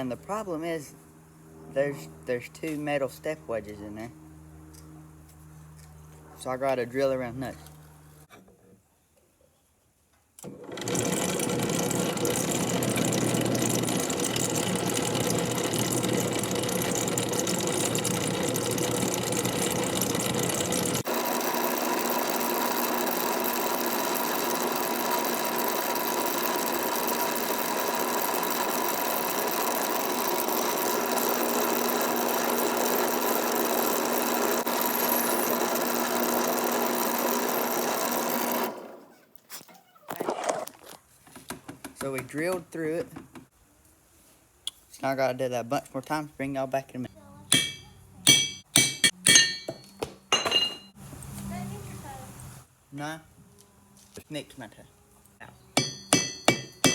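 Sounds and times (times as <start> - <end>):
electric drill boring wood: 10.4 - 39.2.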